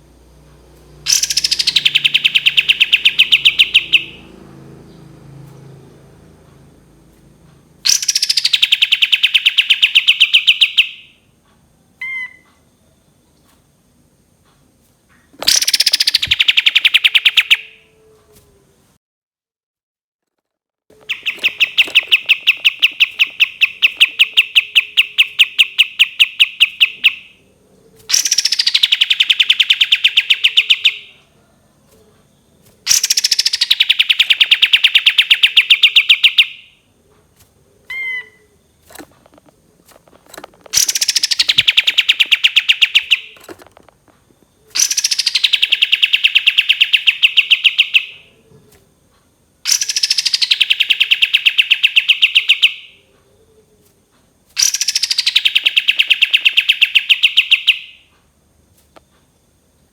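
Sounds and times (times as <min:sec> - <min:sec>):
songbird rapid trills: 0:01.0 - 0:04.4, 0:07.8 - 0:11.1, 0:15.4 - 0:17.8, 0:21.0 - 0:31.2, 0:31.9 - 0:36.7, 0:37.3 - 0:43.7, 0:44.3 - 0:48.2, 0:49.6 - 0:53.0, 0:54.6 - 0:58.0.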